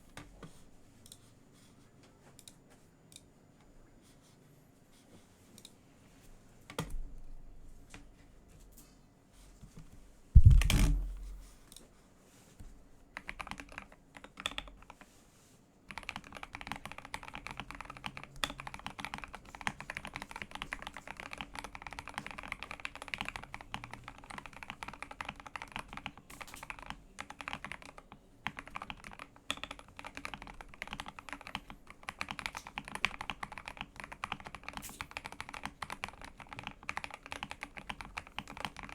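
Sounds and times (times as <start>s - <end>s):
loud thump: 10.4s - 11.5s
typing on mechanical keyboard: 13.2s - 15.1s, 15.9s - 38.9s.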